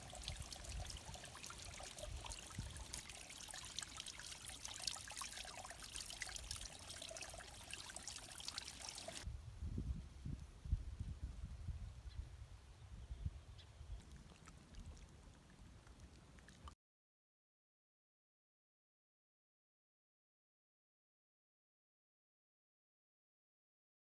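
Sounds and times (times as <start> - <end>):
water trickling in fine drips: 0.0 - 9.3, 13.9 - 16.8.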